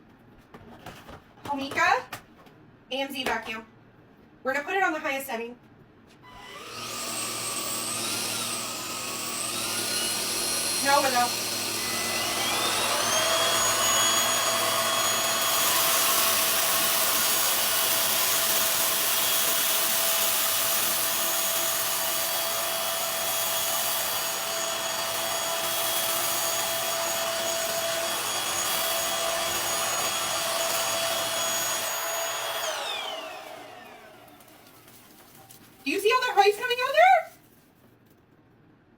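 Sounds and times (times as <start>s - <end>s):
vacuum cleaner motor whining: 6.3s - 35.4s.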